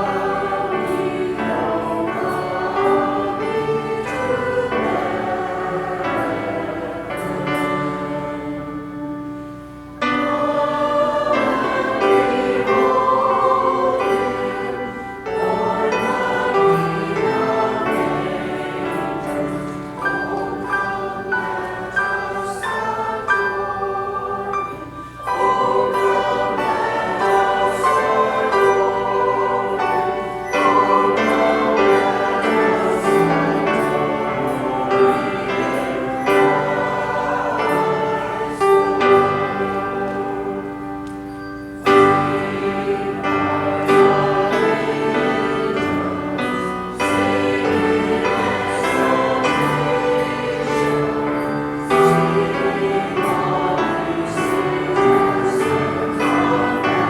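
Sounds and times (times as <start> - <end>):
choir singing: 0.0 - 57.0.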